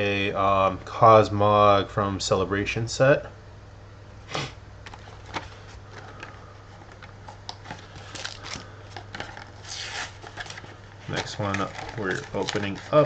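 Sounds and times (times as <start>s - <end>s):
steady low hum: 0.0s - 13.0s
card packaging rustling and crinkling: 4.8s - 13.0s.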